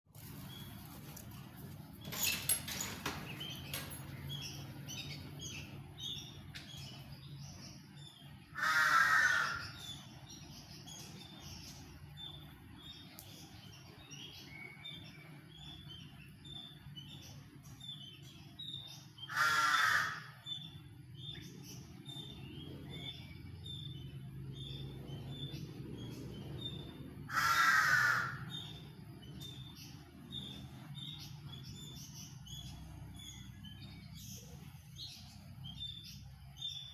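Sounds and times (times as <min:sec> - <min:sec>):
birds chirping: 0:00.2 - 0:36.9
loud harsh bird calls: 0:08.2 - 0:10.5, 0:18.9 - 0:21.0, 0:24.6 - 0:31.2.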